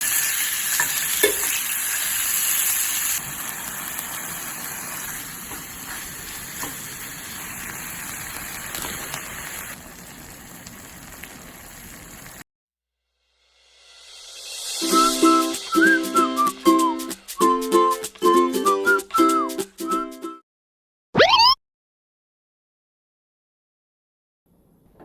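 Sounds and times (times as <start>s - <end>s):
food sizzling in a skillet: 0.0s - 12.4s, 13.5s - 16.2s.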